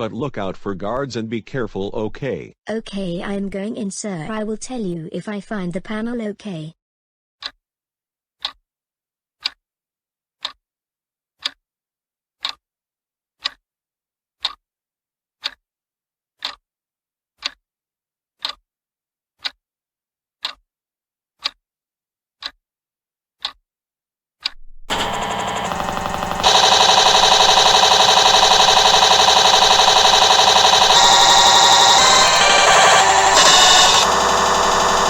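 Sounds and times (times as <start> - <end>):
sharp ticking: 24.9 - 35.0.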